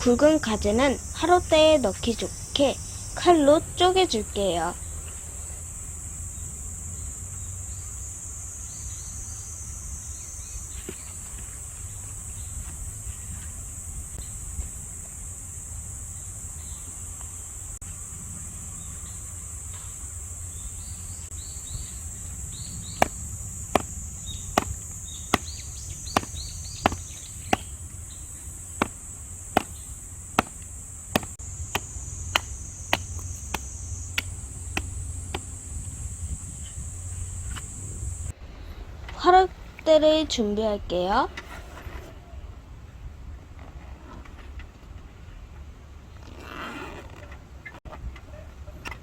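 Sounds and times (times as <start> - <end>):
insect drone: 0.0 - 38.4
knife chopping firewood: 23.0 - 28.0, 28.8 - 35.9.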